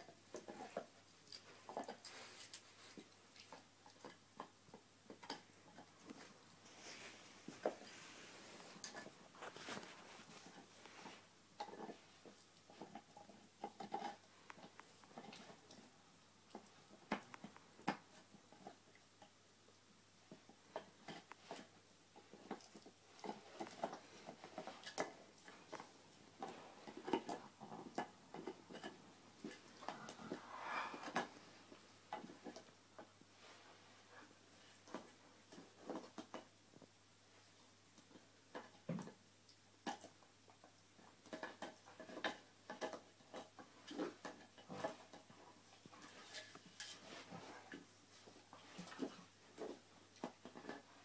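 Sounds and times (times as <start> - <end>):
dog gnawing on antler: 11.6 - 15.9, 20.3 - 31.4.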